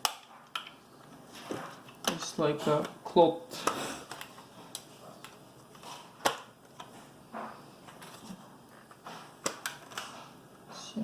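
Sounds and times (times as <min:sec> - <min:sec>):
plastic parts clicking and rustling: 0:03.6 - 0:07.0, 0:07.9 - 0:10.4.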